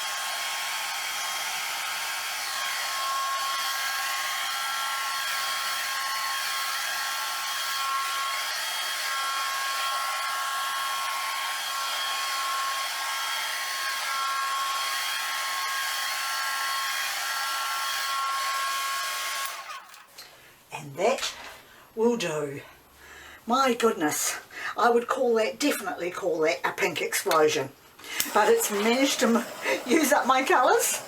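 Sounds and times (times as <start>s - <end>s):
hair dryer blowing: 0.0s - 20.0s, 28.0s - 31.0s.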